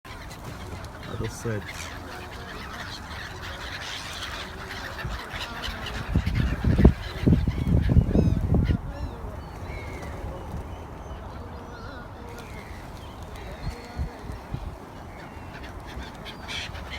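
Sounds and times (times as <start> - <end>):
gulls and pigeons calling: 0.1 - 16.9.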